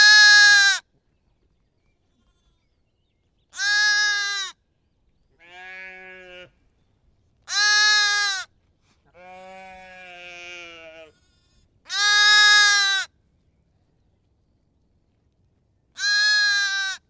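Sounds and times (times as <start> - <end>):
sheep bleating: 5.4 - 6.6, 7.5 - 8.5, 9.1 - 13.1, 16.0 - 17.0.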